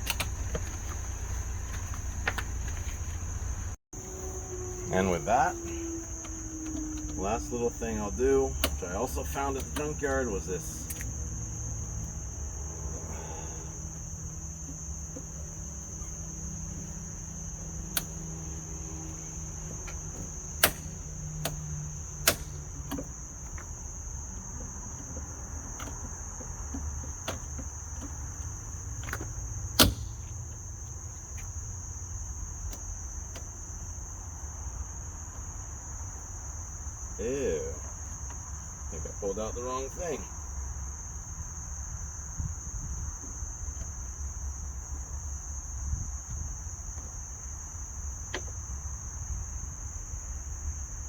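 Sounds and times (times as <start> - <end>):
crickets trilling: 0.0 - 51.0
sharp clicks and knocks: 8.6 - 10.0, 19.7 - 23.8.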